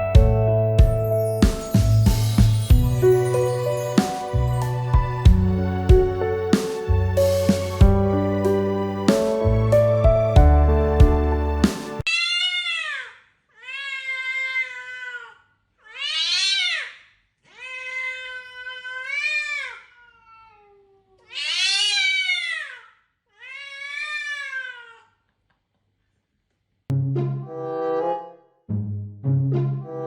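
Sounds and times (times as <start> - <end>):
cat meowing: 15.9 - 16.9, 17.5 - 22.8.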